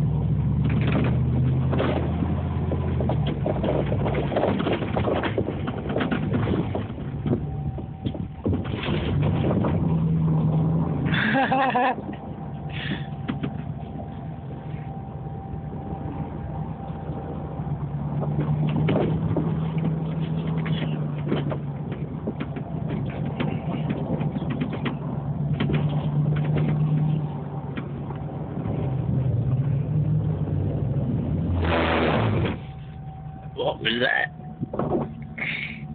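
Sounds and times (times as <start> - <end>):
pickup truck engine revving: 0.0 - 35.9
knocks and clicks: 0.6 - 9.9, 13.1 - 14.3, 18.0 - 28.4, 34.4 - 35.4.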